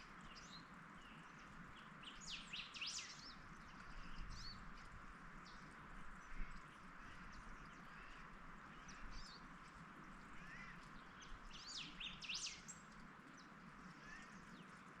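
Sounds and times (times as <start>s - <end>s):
outdoor ambience hiss: 0.0s - 15.0s
whistled bird calls: 2.0s - 3.2s, 11.5s - 12.7s
birds chirping: 10.1s - 14.8s.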